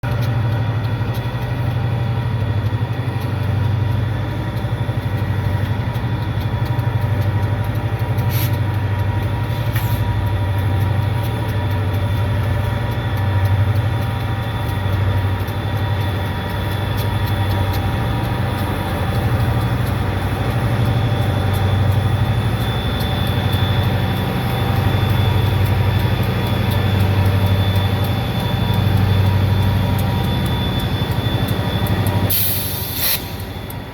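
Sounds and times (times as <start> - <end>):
diesel locomotive drone: 0.0 - 33.9
sharp clicks: 0.1 - 33.9
turbo whine: 0.1 - 33.9.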